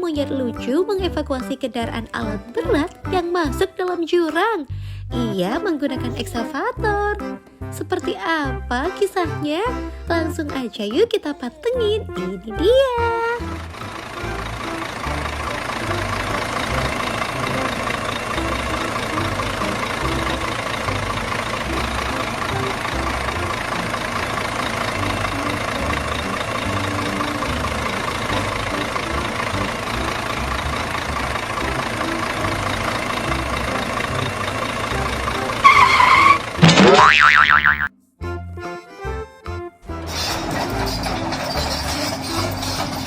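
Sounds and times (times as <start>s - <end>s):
excavator engine droning: 11.6s - 43.0s
comic sound effect with bending pitch: 35.0s - 37.9s.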